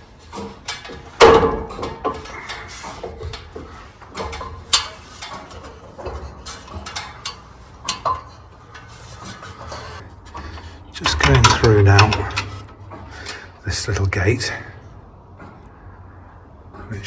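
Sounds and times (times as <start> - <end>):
knocks on ladder rungs: 0.3 - 9.0, 9.7 - 13.4.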